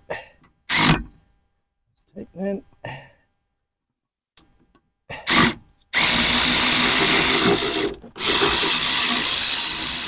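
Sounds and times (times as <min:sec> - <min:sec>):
cordless ratchet spinning: 0:05.3 - 0:10.0.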